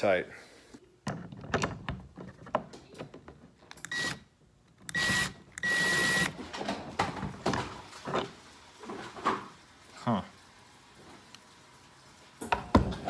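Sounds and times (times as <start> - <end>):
cordless drill whining: 3.9 - 4.2, 4.9 - 6.4.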